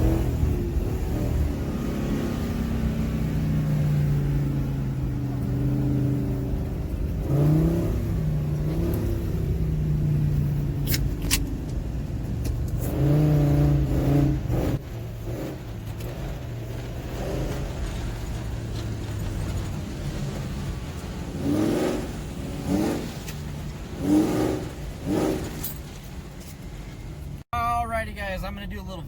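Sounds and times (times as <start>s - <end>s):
vehicle engine accelerating: 0.0s - 27.4s.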